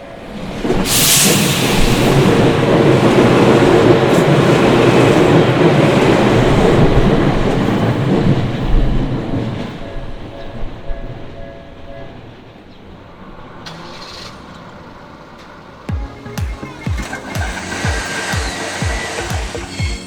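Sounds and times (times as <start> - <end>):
train wheels rumbling on rail: 0.0 - 20.0
level crossing warning bell: 9.6 - 12.4.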